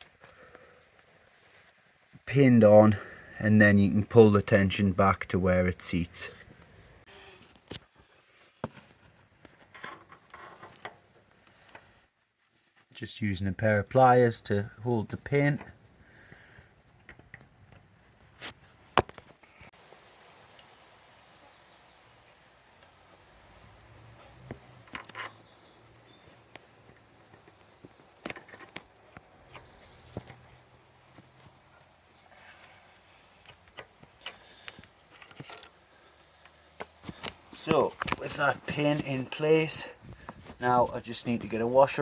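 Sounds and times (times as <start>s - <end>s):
faint steady background: 0.0s - 42.0s.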